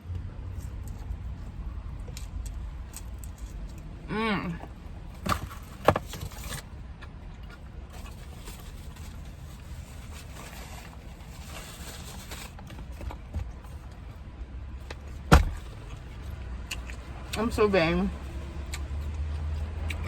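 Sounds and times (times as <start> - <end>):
chewing and lip smacks: 15.8 - 17.4, 18.6 - 20.0.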